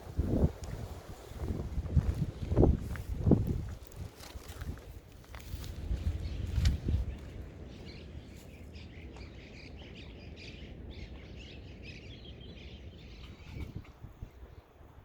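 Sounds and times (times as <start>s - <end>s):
small birds chirping: 5.4s - 14.8s.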